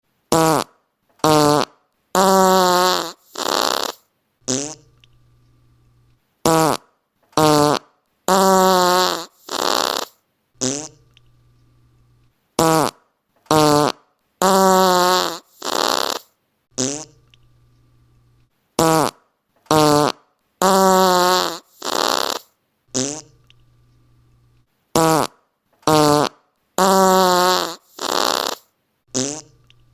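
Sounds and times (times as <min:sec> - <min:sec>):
fart sound effects: 0:00.3 - 0:05.0, 0:06.4 - 0:11.1, 0:12.6 - 0:17.3, 0:18.8 - 0:23.4, 0:25.0 - 0:29.7.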